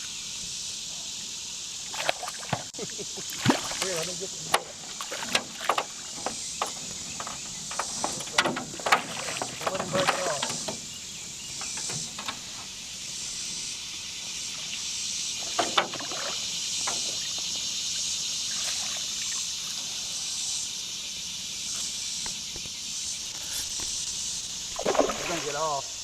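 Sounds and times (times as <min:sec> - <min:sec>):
fast-flowing river water: 0:24.6 - 0:26.0.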